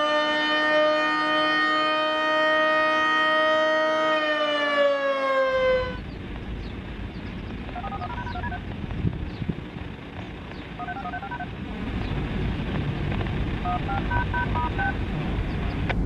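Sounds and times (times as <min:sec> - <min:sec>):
electronic warning siren: 0:00.0 - 0:06.2, 0:07.7 - 0:08.6, 0:10.8 - 0:11.5, 0:13.6 - 0:15.0.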